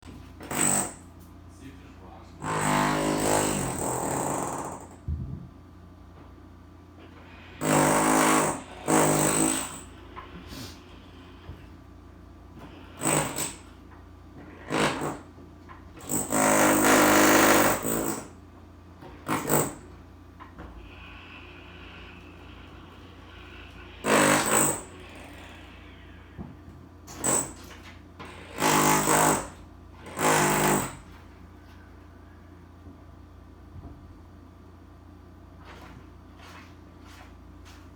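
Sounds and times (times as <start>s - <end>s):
loud drilling: 0.4s - 1.0s, 2.4s - 5.0s, 7.2s - 10.0s, 12.6s - 13.7s, 14.5s - 15.3s, 16.0s - 18.3s, 19.2s - 19.9s, 21.9s - 26.0s, 27.1s - 27.6s, 28.3s - 31.1s
steady low hum: 17.8s - 28.2s.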